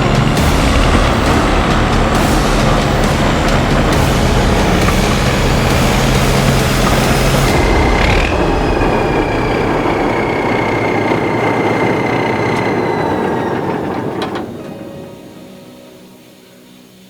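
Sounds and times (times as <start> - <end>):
heavy machinery rattling: 0.0 - 15.7
high squeal falling in pitch: 4.8 - 16.9.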